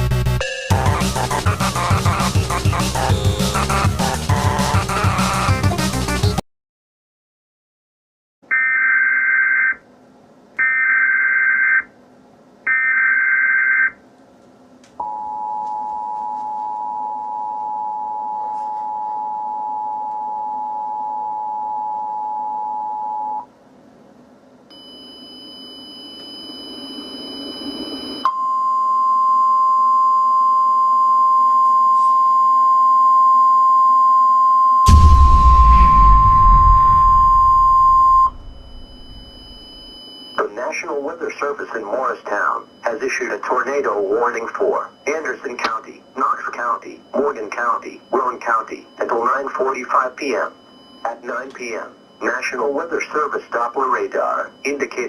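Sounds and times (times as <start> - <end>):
steady alarm tone: 0.2 - 5.6, 34.8 - 40.5, 42.0 - 55.0
digital data buzzing bursts: 0.7 - 6.0
two-tone attention signal: 34.7 - 40.5
loud low rumble: 34.9 - 39.8.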